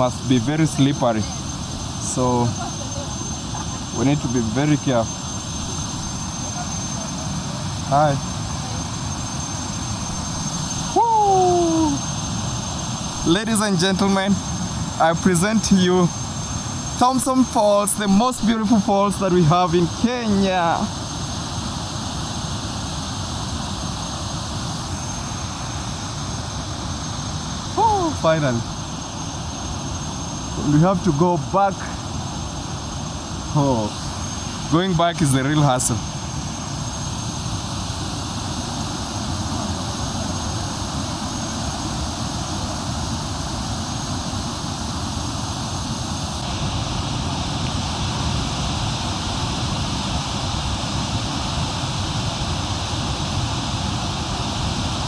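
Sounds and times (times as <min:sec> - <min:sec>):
waterfall roaring: 0:00.0 - 0:12.2, 0:39.1 - 0:55.0.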